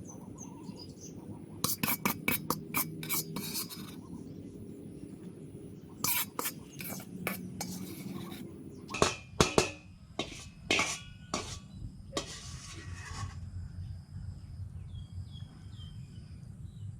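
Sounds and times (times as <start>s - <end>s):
metal utensil clinking against dish: 8.9s - 11.6s.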